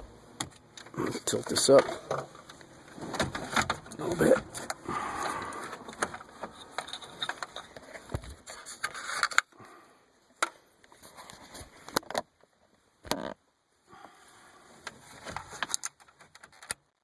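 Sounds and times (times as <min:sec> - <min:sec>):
plastic rustling and scraping: 0:00.9 - 0:09.6, 0:14.9 - 0:16.6.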